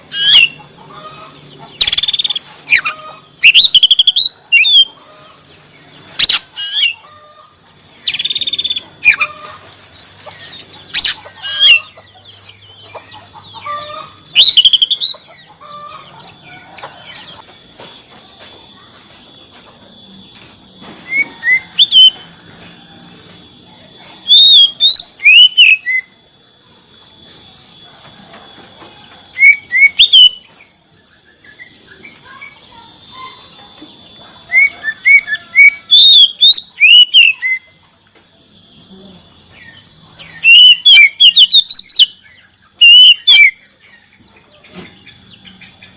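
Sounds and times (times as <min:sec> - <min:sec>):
magpie-robin whistling and chattering: 0:00.0 - 0:05.0, 0:06.0 - 0:07.0, 0:07.9 - 0:17.4, 0:21.1 - 0:22.2, 0:24.2 - 0:26.1, 0:29.4 - 0:33.6, 0:34.5 - 0:37.8, 0:39.4 - 0:45.9.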